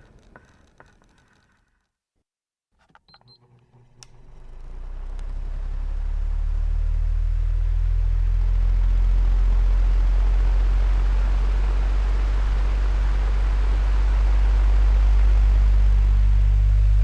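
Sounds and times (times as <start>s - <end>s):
fan motor hum and air rush: 3.9s - 17.0s.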